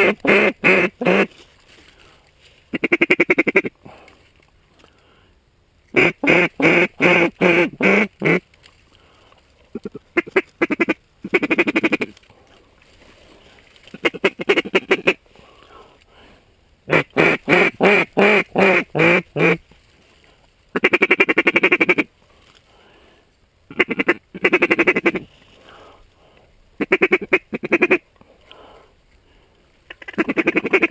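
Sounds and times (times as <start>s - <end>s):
duck call quacks: 0.0s - 1.3s, 2.7s - 3.7s, 5.9s - 8.4s, 9.7s - 12.1s, 13.9s - 15.2s, 16.9s - 19.6s, 20.8s - 22.1s, 23.7s - 25.3s, 26.8s - 28.0s, 30.0s - 30.9s.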